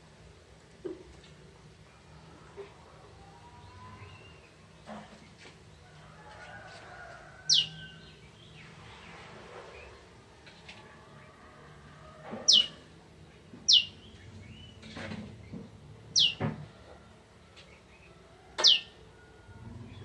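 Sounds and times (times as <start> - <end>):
prinia bird calling: 7.5 - 8.2, 12.4 - 12.9, 13.6 - 14.8, 16.1 - 16.5, 17.7 - 19.0.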